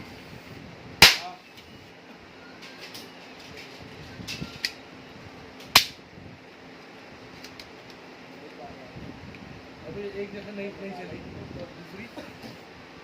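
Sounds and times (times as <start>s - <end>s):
toy gun firing crack: 1.0s - 1.3s, 5.7s - 6.0s.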